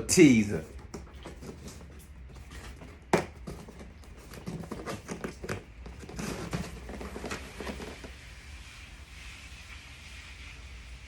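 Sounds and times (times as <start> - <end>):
rustling handling noises: 0.1 - 8.2.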